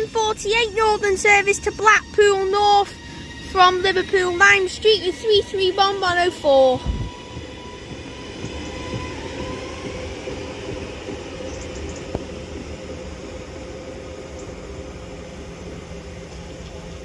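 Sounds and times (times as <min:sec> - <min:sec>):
train rumbling: 0:00.0 - 0:17.0
electric motor whine: 0:06.6 - 0:17.0.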